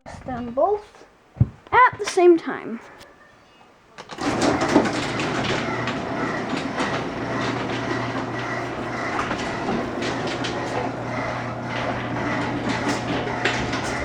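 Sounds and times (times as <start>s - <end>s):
roller and hinge clicks: 4.0s - 14.0s
garage door motor hum: 4.1s - 14.0s
doors rumbling along tracks: 4.2s - 14.0s.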